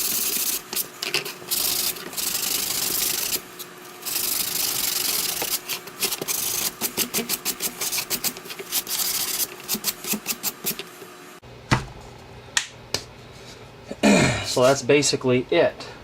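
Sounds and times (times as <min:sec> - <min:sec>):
sanding block rubbing wood: 0:00.0 - 0:10.9.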